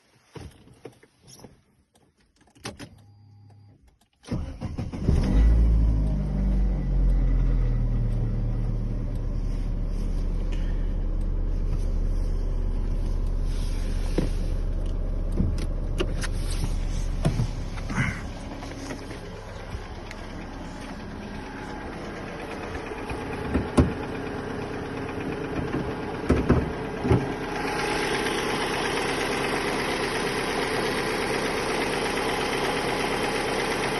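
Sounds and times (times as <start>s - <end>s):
car engine starting: 2.4s - 33.9s
car engine idling: 5.5s - 33.9s
engine knocking: 22.2s - 33.9s.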